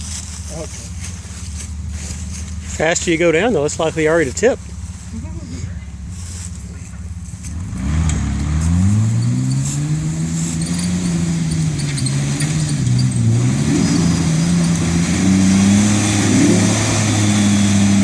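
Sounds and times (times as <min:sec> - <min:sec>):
engine revving hard: 0:07.5 - 0:18.0.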